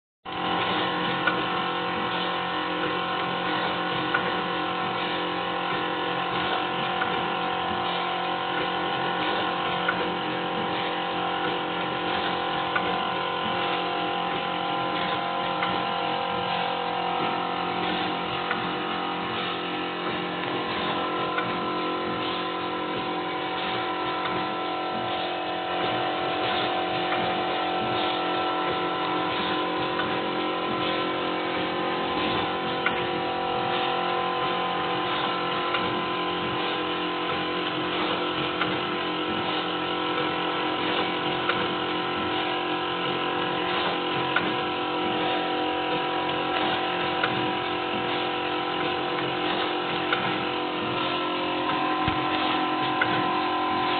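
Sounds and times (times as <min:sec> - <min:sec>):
machine humming: 0:00.3 - 0:53.9.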